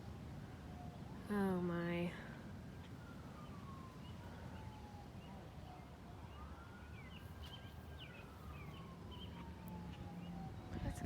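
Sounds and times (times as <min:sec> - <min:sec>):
warning siren wailing: 0:00.7 - 0:11.0
low wind rumble: 0:08.0 - 0:11.0.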